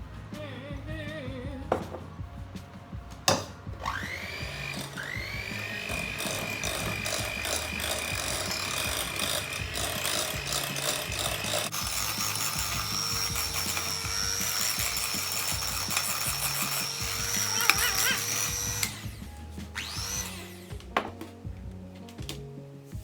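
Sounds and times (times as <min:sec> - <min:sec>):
electric hand mixer whining: 0:03.7 - 0:21.2.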